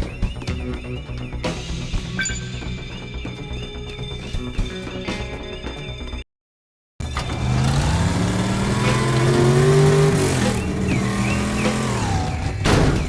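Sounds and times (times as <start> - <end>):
music: 0.0 - 6.3, 7.0 - 13.0
car engine revving: 7.0 - 13.0.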